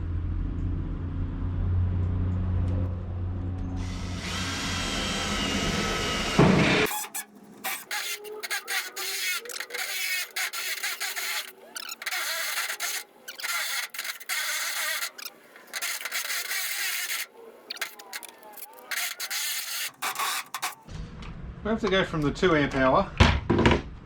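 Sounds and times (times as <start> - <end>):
electric drill boring: 3.8 - 20.9
scraping and rubbing noises: 6.8 - 20.9.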